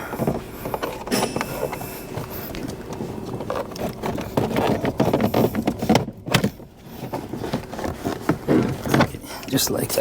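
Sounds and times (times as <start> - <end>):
plastic scraping and clicking: 2.5 - 9.2.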